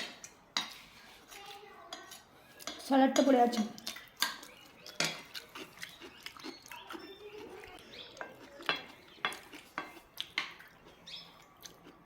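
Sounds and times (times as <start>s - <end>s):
plates and cutlery clinking: 0.0s - 5.4s
faint children calling: 6.6s - 9.2s.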